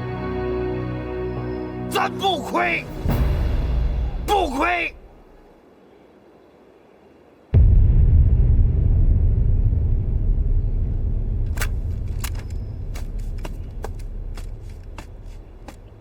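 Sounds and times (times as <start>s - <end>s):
explosion rumble: 7.5s - 13.0s.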